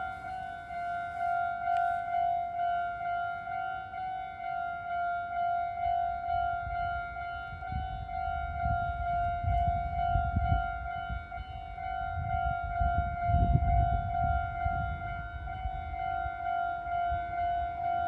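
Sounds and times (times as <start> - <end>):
level crossing warning bell: 0.0 - 18.0.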